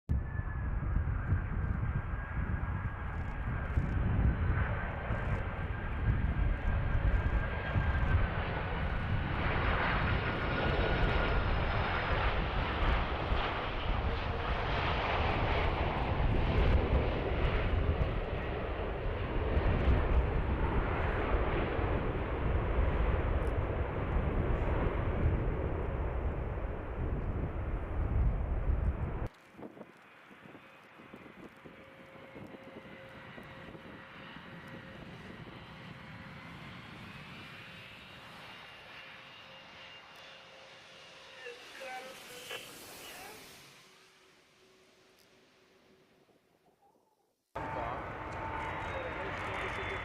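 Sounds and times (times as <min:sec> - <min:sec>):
airplane engine drone: 0:00.1 - 0:46.4, 0:47.6 - 0:50.0
faint engine whine: 0:00.1 - 0:46.5, 0:47.6 - 0:50.0.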